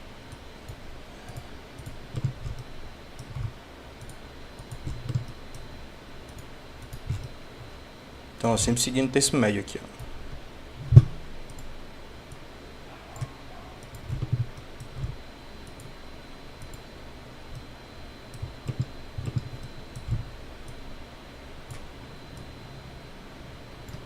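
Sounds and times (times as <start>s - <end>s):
computer mouse clicking: 0.6s - 2.6s, 3.2s - 7.4s, 10.9s - 11.7s, 13.2s - 16.0s, 16.6s - 16.8s, 18.3s - 20.8s, 21.6s - 22.5s.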